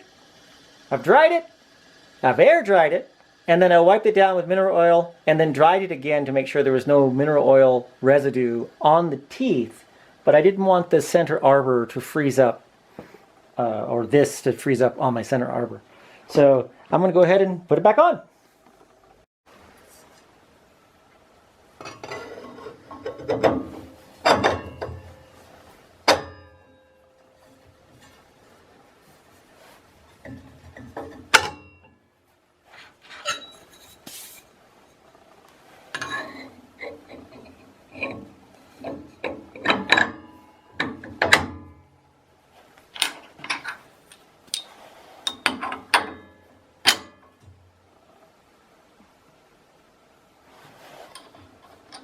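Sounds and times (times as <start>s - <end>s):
metal clanks and clicks: 21.8s - 25.4s, 26.0s - 28.2s, 36.0s - 41.9s, 43.0s - 47.6s.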